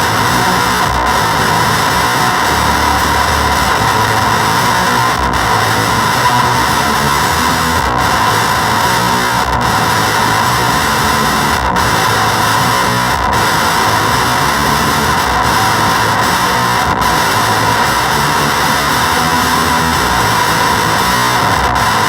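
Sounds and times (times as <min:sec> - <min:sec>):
fuzzed electric guitar: 0:00.0 - 0:22.0.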